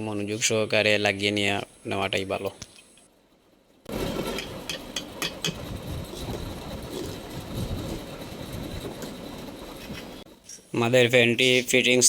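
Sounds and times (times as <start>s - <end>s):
steady rumbling noise: 3.2s - 12.0s
metal clicks and rattling of fan parts: 4.3s - 5.7s.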